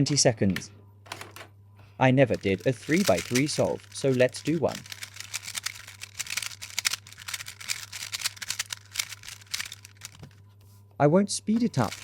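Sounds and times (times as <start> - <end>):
puzzle cube layers clicking: 2.4 - 10.3.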